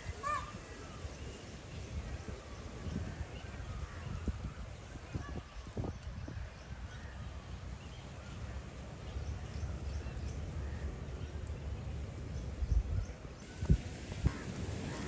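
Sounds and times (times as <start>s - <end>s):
faint bird calls: 0.0s - 1.6s
strong wind buffeting microphone: 0.0s - 7.9s, 12.0s - 15.0s.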